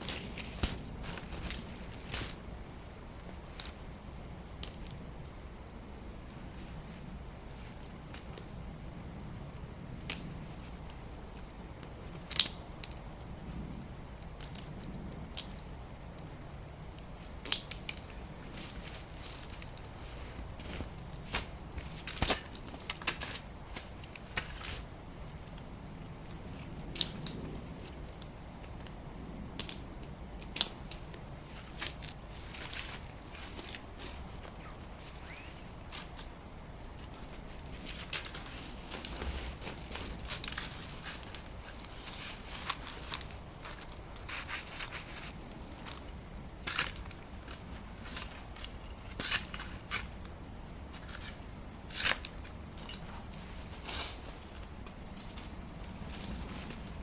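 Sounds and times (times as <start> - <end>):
skis crunching over snow: 0.0 - 2.4, 37.0 - 46.1.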